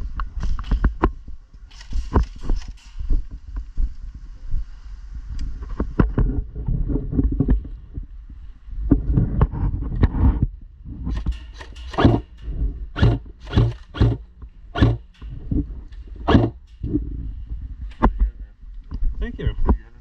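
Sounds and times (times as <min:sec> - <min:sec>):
wind rumble: 0:00.0 - 0:20.0
microphone handling: 0:08.8 - 0:19.8
crunching footsteps: 0:11.1 - 0:19.8.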